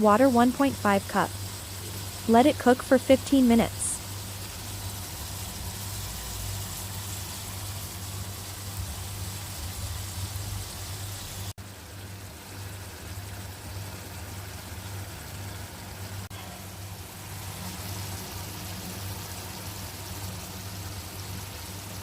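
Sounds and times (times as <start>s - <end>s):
stove flame hum: 0.0s - 22.0s
food hissing in a pan: 1.3s - 11.6s, 16.0s - 22.0s.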